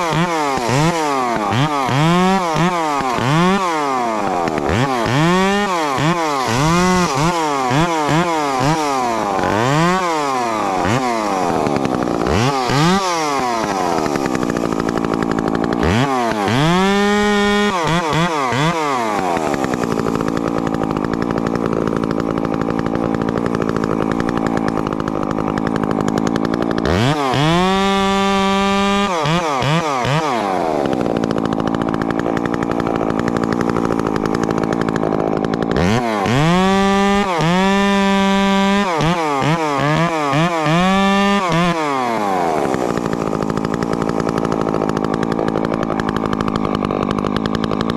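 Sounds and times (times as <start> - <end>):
chainsaw revving: 0.0 - 47.9.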